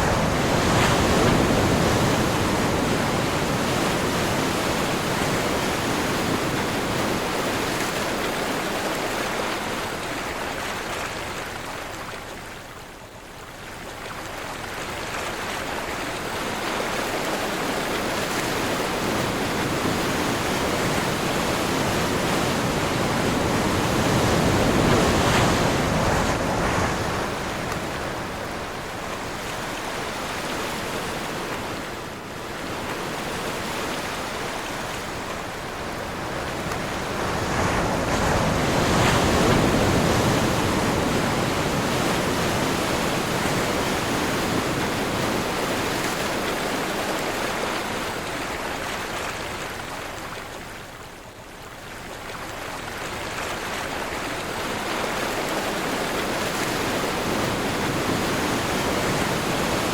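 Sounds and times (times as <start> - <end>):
sea waves breaking: 0.0 - 12.4, 14.1 - 59.9
wind: 0.0 - 59.9.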